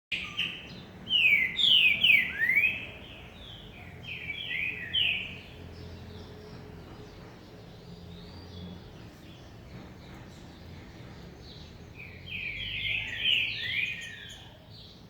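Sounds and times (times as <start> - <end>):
songbird whistling: 0.1 - 2.9, 12.0 - 14.5.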